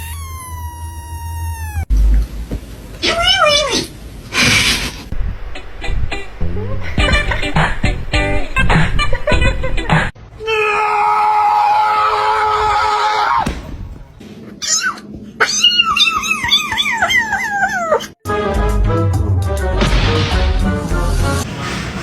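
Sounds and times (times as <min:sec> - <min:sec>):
music: 0:05.5 - 0:10.1, 0:18.2 - 0:22.0
cat yowling: 0:14.6 - 0:18.2.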